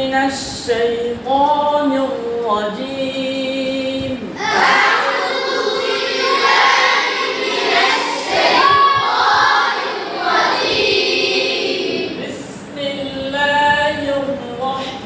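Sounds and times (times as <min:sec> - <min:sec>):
group of voices chanting: 0:04.4 - 0:12.3.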